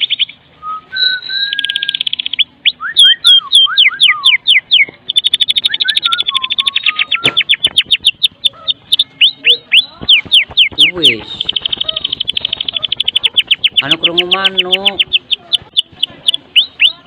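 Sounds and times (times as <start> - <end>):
sharp downslurred bird whistles: 0.0 - 8.1
bird singing rattling call: 1.0 - 17.0.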